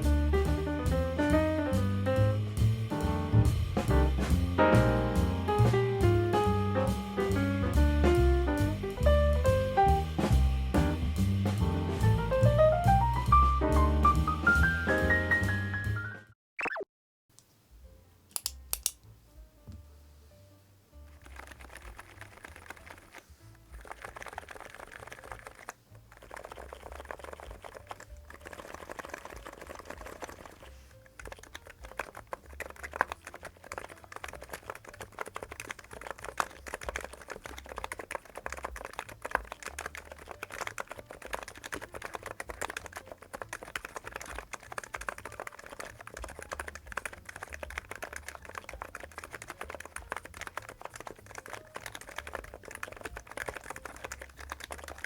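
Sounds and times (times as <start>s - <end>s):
fast keyboard typing: 21.1s - 55.0s.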